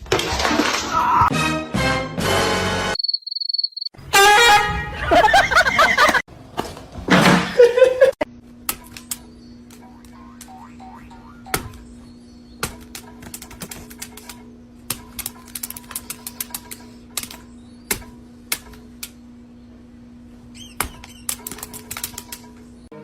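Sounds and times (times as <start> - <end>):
steady low hum: 4.9 - 23.0
rapid clicking and tapping: 12.6 - 19.2, 20.8 - 22.6.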